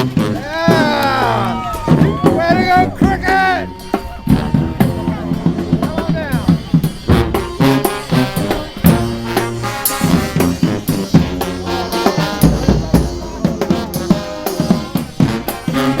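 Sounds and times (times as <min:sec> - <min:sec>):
brass band playing: 0:00.0 - 0:16.0.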